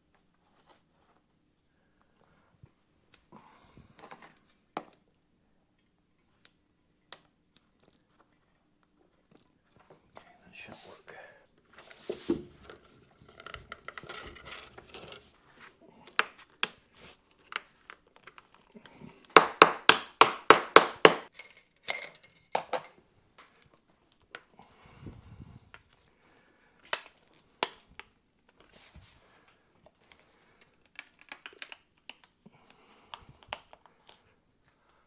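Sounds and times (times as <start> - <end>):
small parts handled by hand: 11.6 - 19.4, 21.2 - 23.0.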